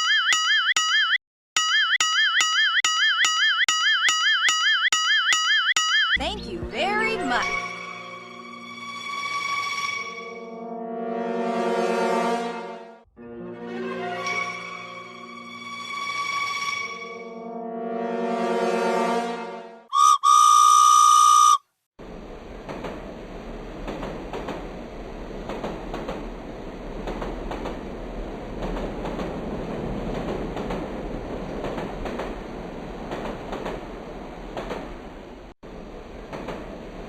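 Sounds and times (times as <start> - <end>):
train running along rails: 6.1 - 21.4, 22.0 - 37.0
train whistle blowing: 19.9 - 21.6.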